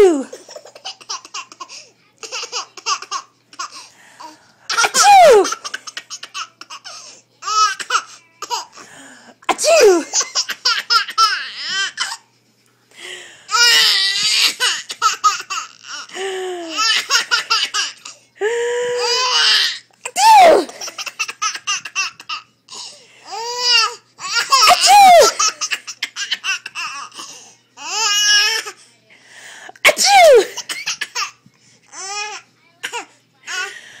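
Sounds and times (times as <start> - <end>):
baby laughing: 0.1 - 3.8, 9.5 - 12.2, 13.5 - 18.2, 20.4 - 22.5, 23.3 - 27.2.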